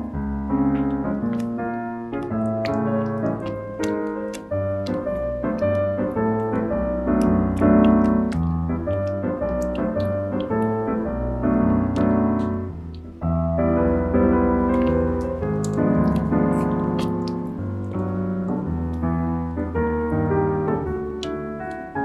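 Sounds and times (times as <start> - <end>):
piano music with bass line: 0.0 - 22.0.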